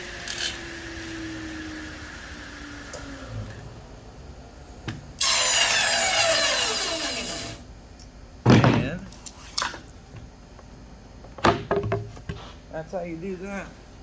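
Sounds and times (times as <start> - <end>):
table saw winding down: 0.0 - 3.8, 5.2 - 7.6
loud whirring falling in pitch: 0.0 - 4.5, 5.1 - 7.6
knock: 11.4 - 12.1.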